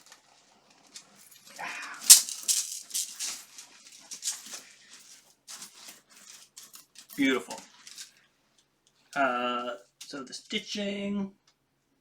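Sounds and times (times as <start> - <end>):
metal armour clicking and rattling: 0.8 - 4.7.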